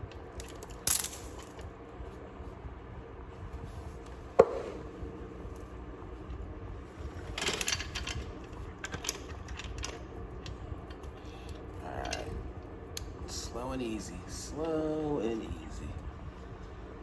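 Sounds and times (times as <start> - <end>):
drive chain clinking and rattling: 0.3 - 1.7, 7.1 - 12.4.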